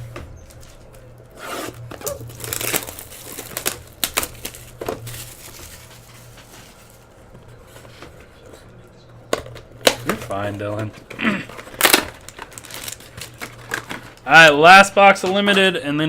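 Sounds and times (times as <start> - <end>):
steady low hum: 0.0 - 15.1
plastic packaging crinkling and tearing: 0.4 - 8.1, 9.5 - 14.6.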